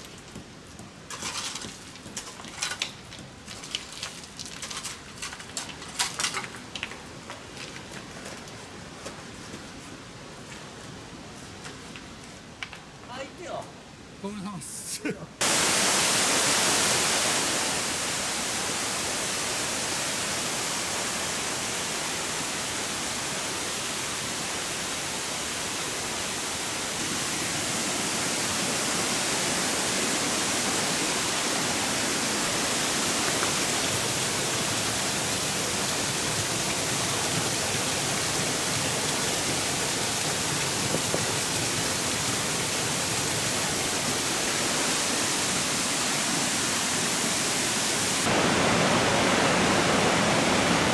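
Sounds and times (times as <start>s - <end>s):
waterfall and river roar: 13.8s - 50.9s.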